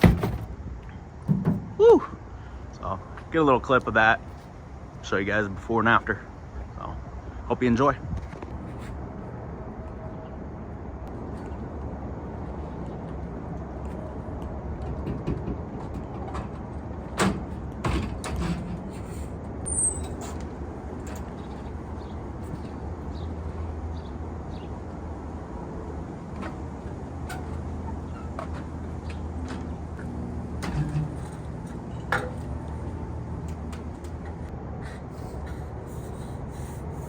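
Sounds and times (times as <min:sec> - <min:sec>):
sharp knocks and clanks: 0:00.0 - 0:01.8, 0:14.8 - 0:19.0.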